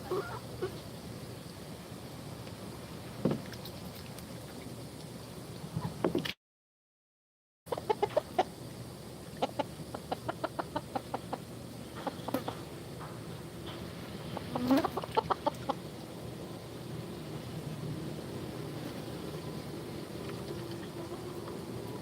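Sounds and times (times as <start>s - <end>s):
chickens clucking: 0.0s - 0.9s, 7.7s - 16.0s.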